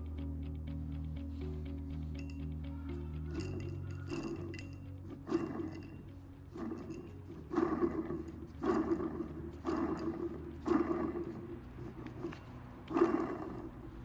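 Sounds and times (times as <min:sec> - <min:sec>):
low steady hum: 0:00.0 - 0:14.0
rough mechanical growling: 0:03.3 - 0:14.0.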